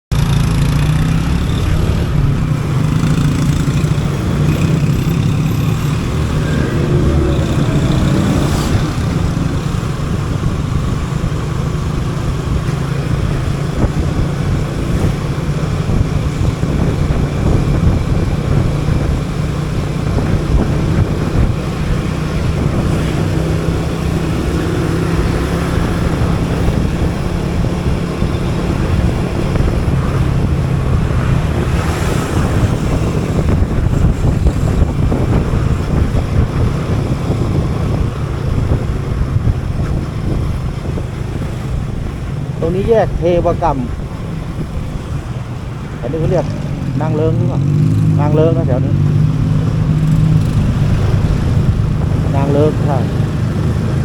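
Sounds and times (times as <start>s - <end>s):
motorcycle engine running: 0.1s - 54.0s
road noise: 0.1s - 54.0s.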